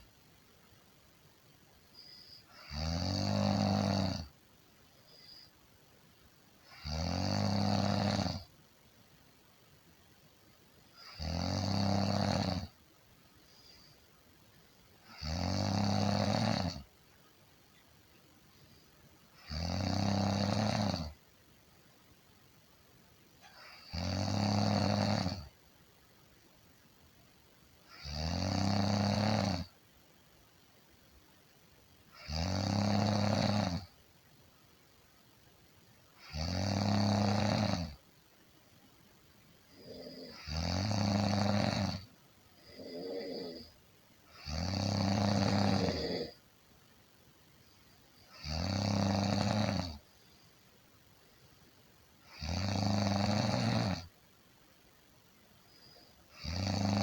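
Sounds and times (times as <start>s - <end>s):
person snoring: 2.0s - 4.3s, 6.7s - 8.5s, 11.0s - 12.8s, 15.0s - 16.9s, 19.4s - 21.2s, 23.4s - 25.5s, 27.9s - 29.7s, 32.2s - 33.9s, 36.2s - 38.0s, 39.7s - 46.4s, 48.3s - 50.0s, 52.2s - 54.1s, 55.8s - 57.0s.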